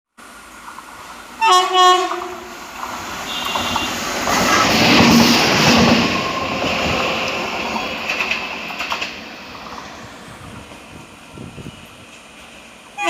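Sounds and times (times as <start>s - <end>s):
train wheels on rails: 0.1s - 13.0s
locomotive horn blast: 1.4s - 2.5s, 3.2s - 4.1s.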